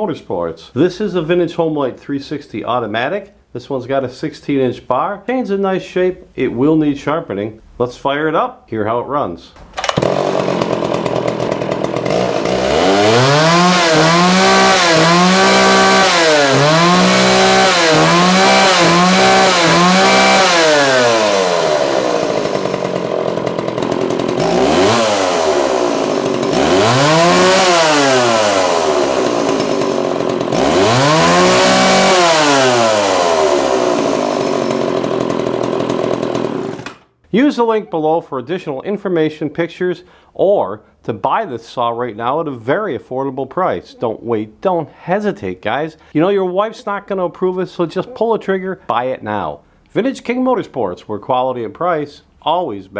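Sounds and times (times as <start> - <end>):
chainsaw revving and idling: 9.7 - 37.0.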